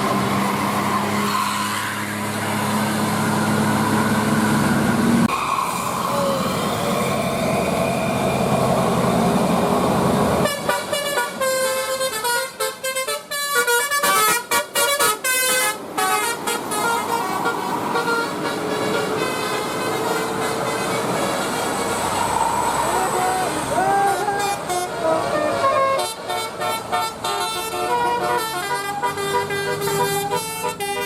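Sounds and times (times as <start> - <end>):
passing bus noise: 0.0 - 31.0
musical air horn tune: 10.4 - 22.0, 23.8 - 31.0.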